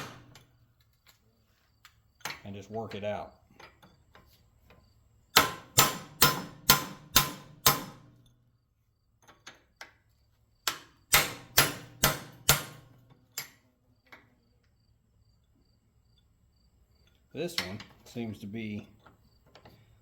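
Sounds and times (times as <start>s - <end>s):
hammer striking steel punch: 5.3s - 8.1s, 10.7s - 13.5s.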